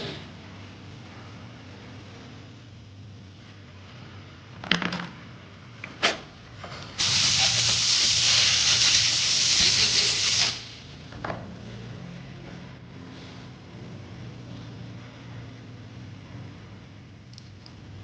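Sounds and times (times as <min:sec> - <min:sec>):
pressurised air jet hissing: 0:07.0 - 0:10.8.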